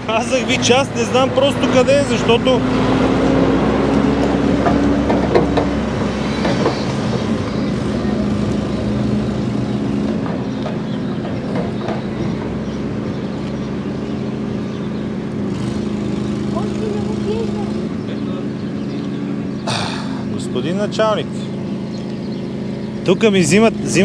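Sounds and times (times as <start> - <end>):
large engine humming: 0.0 - 24.0
knocks and clanks: 4.4 - 12.6.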